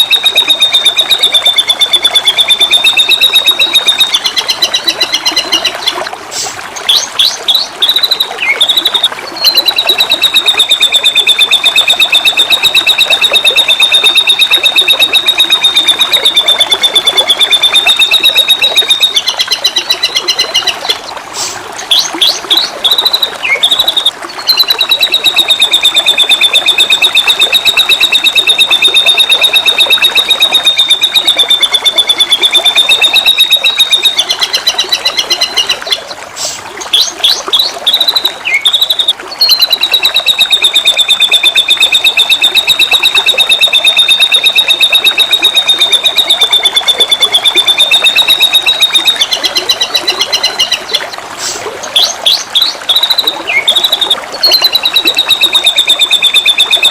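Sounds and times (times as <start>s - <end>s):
bird singing whistled phrases: 0.0s - 6.0s, 6.9s - 20.9s, 21.9s - 36.2s, 36.9s - 50.9s, 51.9s - 56.9s
rapid high bird trill: 0.0s - 56.9s
flowing water hiss: 4.2s - 10.4s, 18.6s - 29.0s, 34.4s - 43.4s, 47.6s - 56.5s.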